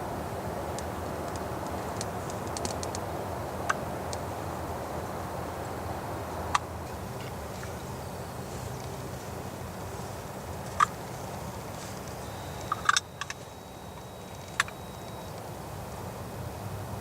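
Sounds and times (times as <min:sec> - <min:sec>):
steady background hiss: 0:00.0 - 0:17.0
turkey calls: 0:12.2 - 0:15.4.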